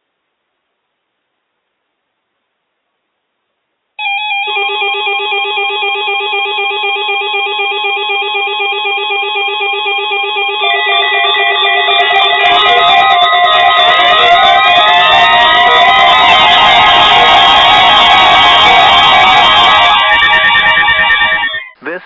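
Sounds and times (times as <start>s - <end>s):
weather alert radio alarms: 10.2s - 21.6s.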